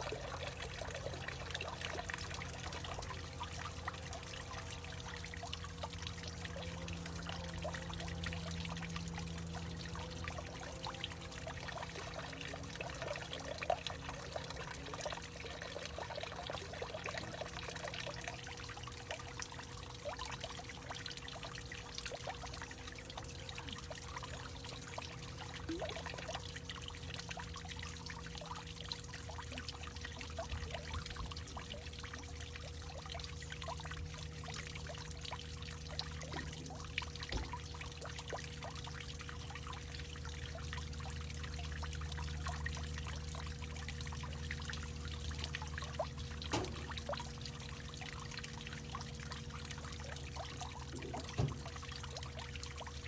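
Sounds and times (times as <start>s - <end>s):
water drips and splashes: 0.0s - 53.0s
water trickling and pouring: 0.0s - 53.0s.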